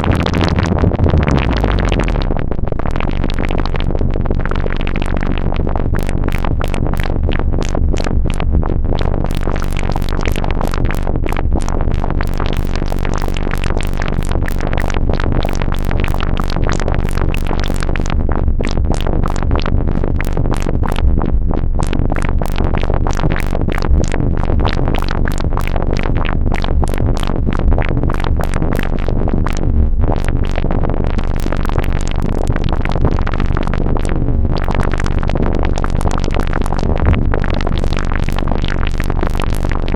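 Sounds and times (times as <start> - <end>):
synthesized clicks and pops: 0.0 - 2.9, 6.0 - 30.6
steady low hum: 0.0 - 39.9.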